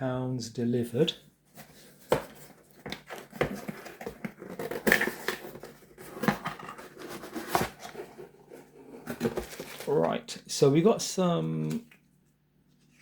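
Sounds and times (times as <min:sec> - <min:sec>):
packaging rustling and scraping: 0:01.5 - 0:10.2.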